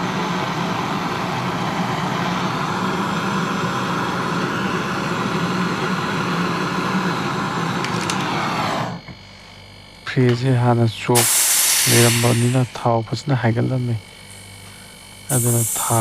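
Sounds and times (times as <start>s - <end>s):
compressed gas blasting through tubing: 11.2s - 12.8s, 14.6s - 16.0s.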